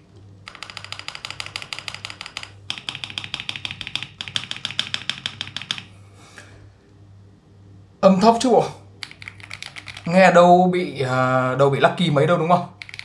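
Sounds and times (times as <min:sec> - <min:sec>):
fast typing on mechanical keyboard: 0:00.4 - 0:05.9, 0:09.0 - 0:10.2, 0:12.8 - 0:13.0.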